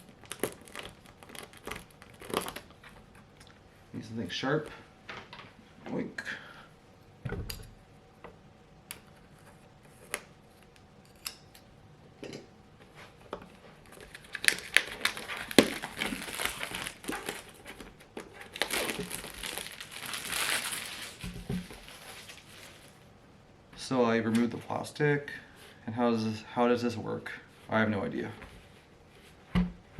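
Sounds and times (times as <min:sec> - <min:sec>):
plastic wrap crinkling: 0:00.0 - 0:03.5, 0:13.8 - 0:23.1.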